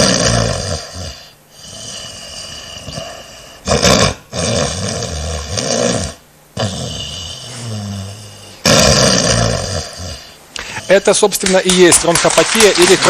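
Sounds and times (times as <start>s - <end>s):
woman snoring heavily: 0.0s - 11.1s.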